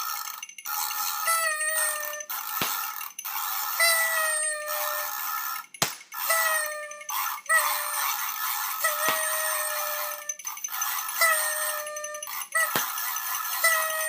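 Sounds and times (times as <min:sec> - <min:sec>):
party horns tooting: 0:01.0 - 0:02.9, 0:03.7 - 0:10.4, 0:11.0 - 0:14.0
sharp pops: 0:02.5 - 0:02.8, 0:05.8 - 0:06.2.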